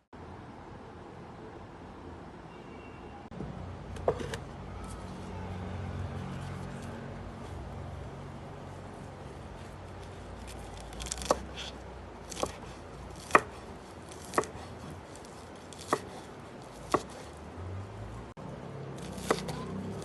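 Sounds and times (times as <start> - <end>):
knife chopping food: 11.0 - 17.2, 19.0 - 20.0.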